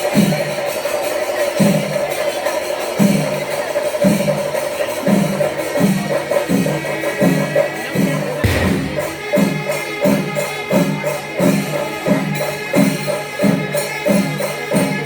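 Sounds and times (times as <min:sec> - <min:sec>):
drums struck in steady beat: 0:08.4 - 0:10.8
cymbals shimmering: 0:08.5 - 0:09.8
steady held note: 0:08.5 - 0:09.8.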